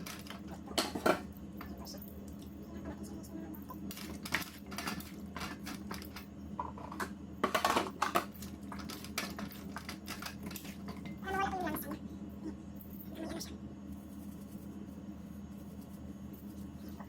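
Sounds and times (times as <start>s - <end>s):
bowl and utensils clattering: 0.0s - 1.8s, 3.9s - 11.2s
steady low hum: 0.0s - 17.0s.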